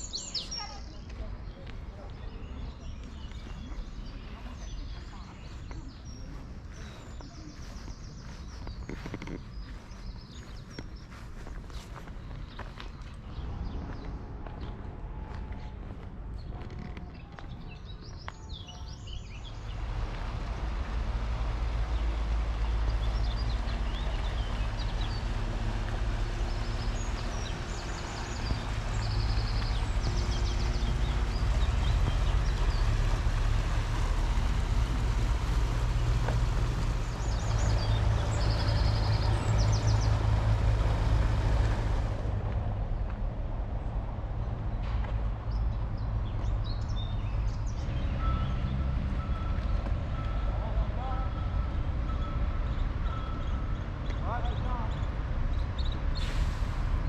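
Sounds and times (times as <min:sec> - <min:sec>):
bird chirps: 0:00.0 - 0:01.6
steady low rumble: 0:00.0 - 0:47.8.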